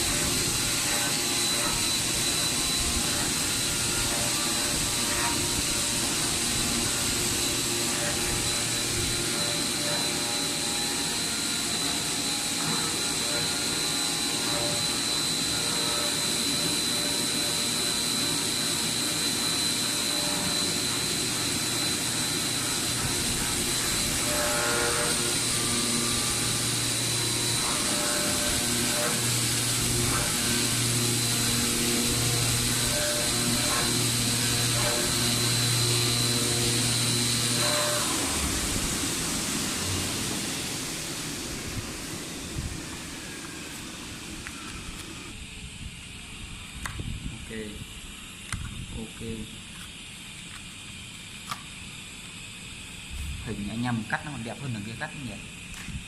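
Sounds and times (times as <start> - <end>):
plotter machine whirring: 0.0 - 45.4
low motor hum: 53.1 - 53.7.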